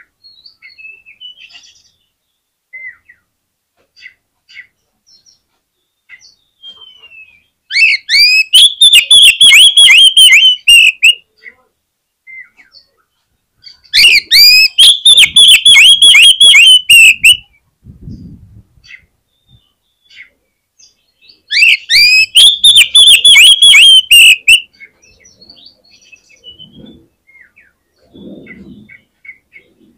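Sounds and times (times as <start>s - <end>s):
faint bird chirps: 4.0s - 18.2s, 18.8s - 29.9s
bird whistled song: 6.1s - 11.2s, 13.7s - 17.6s, 20.8s - 27.8s.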